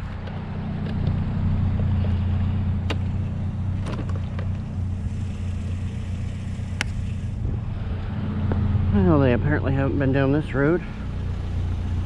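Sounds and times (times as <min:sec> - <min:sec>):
pickup truck engine rumble: 0:00.0 - 0:12.0.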